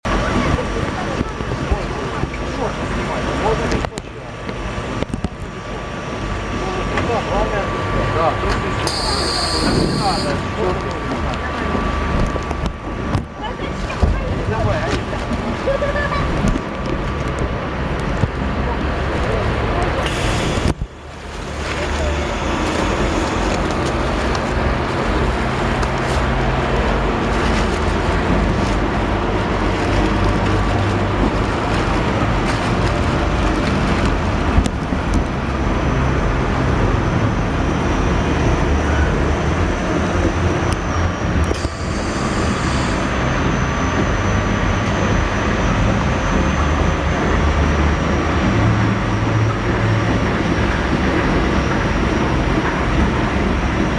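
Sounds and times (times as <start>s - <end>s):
loud rushing water of boat ride: 0.0s - 53.9s
faint voices: 0.1s - 37.1s.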